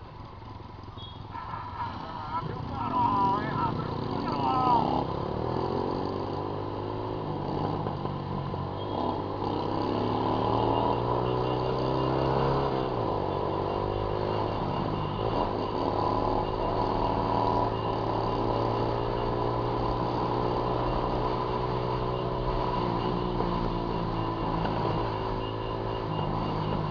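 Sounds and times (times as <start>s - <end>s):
motorcycle engine running: 0.0s - 26.9s.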